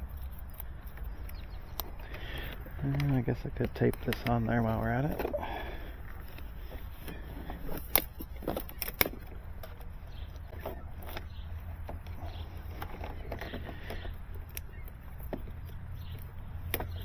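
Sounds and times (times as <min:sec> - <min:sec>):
hand handling clicks and knocks: 0:00.0 - 0:17.0.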